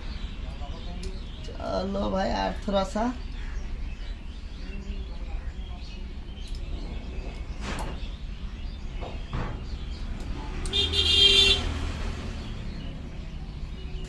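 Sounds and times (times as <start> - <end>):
road traffic rumble: 0.0 - 14.0
vehicle horn: 10.7 - 12.0.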